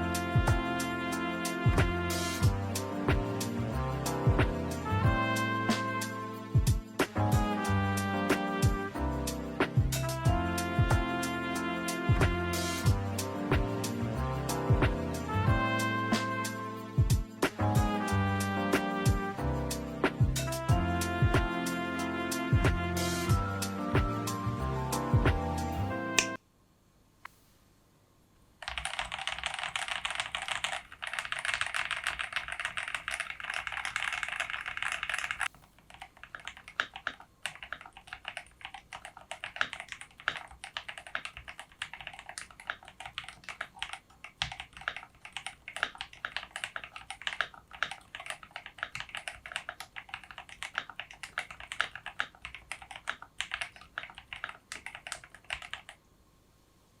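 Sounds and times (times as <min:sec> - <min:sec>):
mechanical keyboard typing: 0:28.6 - 0:56.0.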